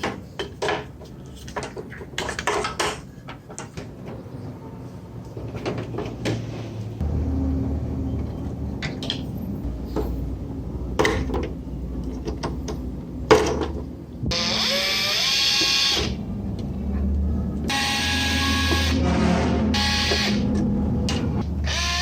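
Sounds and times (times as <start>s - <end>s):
handling knocks and clatter: 0.0s - 4.4s, 10.9s - 14.0s
electric tool whining: 14.3s - 16.3s, 17.7s - 22.0s.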